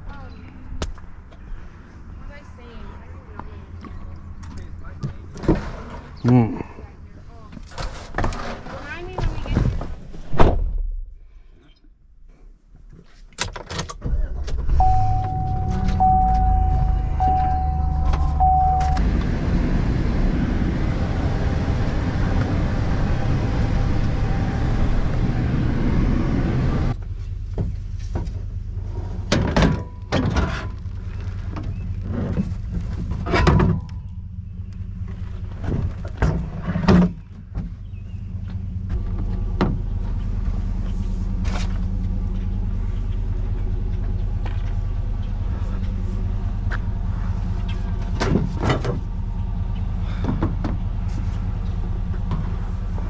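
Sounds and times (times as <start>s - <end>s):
vehicle engine starting and running: 13.7s - 53.0s
warning chime beeping: 14.8s - 19.0s.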